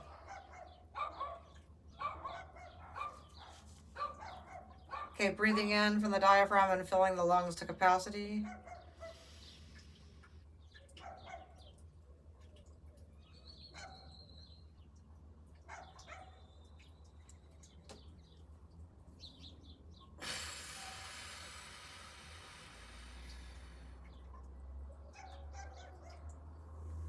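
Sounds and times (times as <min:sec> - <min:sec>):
distant dog barking: 0:00.0 - 0:05.2, 0:08.4 - 0:09.3, 0:10.9 - 0:11.8, 0:13.7 - 0:14.3, 0:15.6 - 0:16.5, 0:24.8 - 0:26.4
birds chirping: 0:00.0 - 0:20.2.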